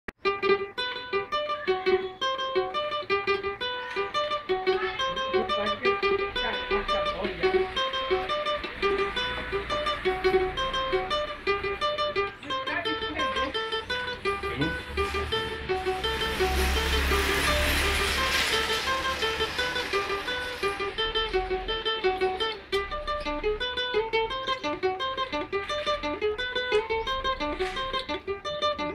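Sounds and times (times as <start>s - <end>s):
small guitar picked melody: 0.1s - 28.9s.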